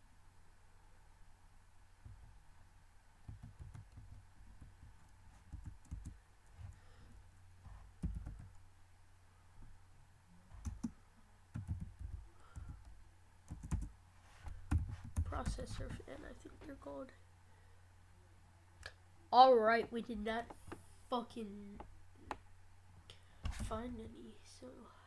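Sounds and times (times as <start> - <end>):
computer keyboard typing: 3.3 - 4.2, 5.4 - 6.2, 8.0 - 8.6, 10.6 - 10.9, 11.5 - 12.9, 13.5 - 13.9, 14.7 - 15.9.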